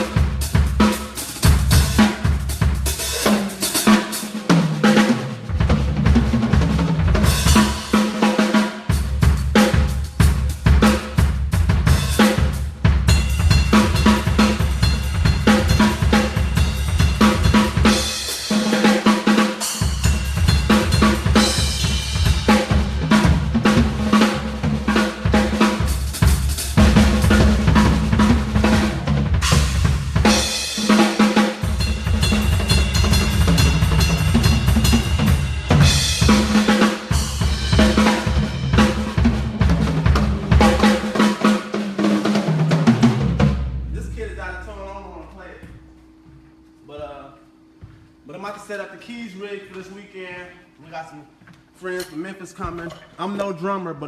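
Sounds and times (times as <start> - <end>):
acoustic drum kit playing: 0.0 - 47.2
cymbals ringing: 12.0 - 23.4, 29.4 - 39.4, 43.7 - 50.2.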